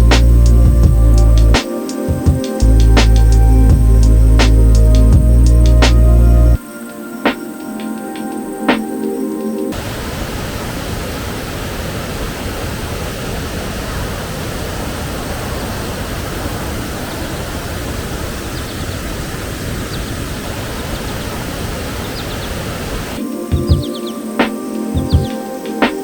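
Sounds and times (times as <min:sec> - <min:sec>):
waterfall rushing: 0:09.7 - 0:25.8.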